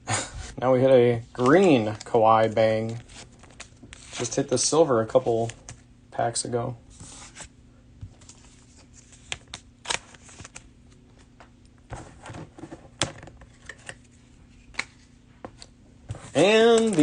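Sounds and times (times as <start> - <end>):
trading cards flipped through: 8.1 - 11.5, 13.1 - 15.7, 16.4 - 17.0.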